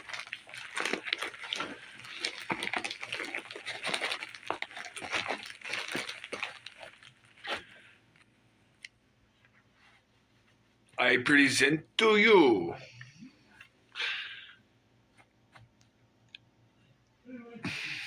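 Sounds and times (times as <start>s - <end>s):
gift bag paper rustling: 0.0s - 8.3s.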